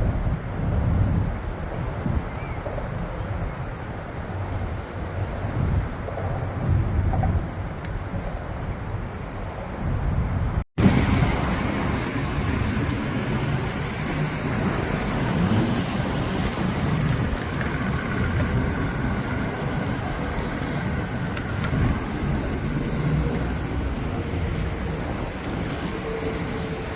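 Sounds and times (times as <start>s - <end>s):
wind buffeting microphone: 0.0s - 26.9s
road traffic rumble: 10.5s - 26.9s.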